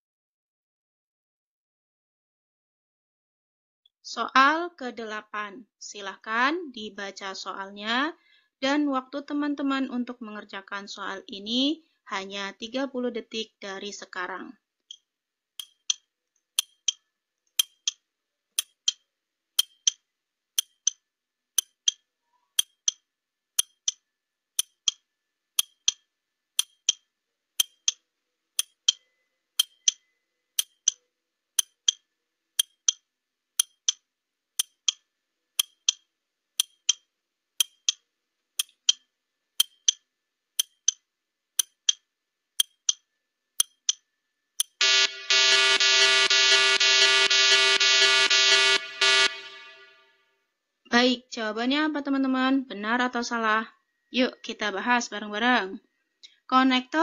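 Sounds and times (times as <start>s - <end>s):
clock ticking: 15.6s - 18.0s, 18.6s - 20.0s, 20.6s - 21.0s, 21.6s - 23.0s, 23.6s - 24.0s, 24.6s - 28.0s, 28.6s - 31.0s, 31.6s - 34.0s, 34.6s - 41.0s, 41.6s - 44.0s, 44.6s - 45.1s
alarm buzzer: 44.8s - 50.2s.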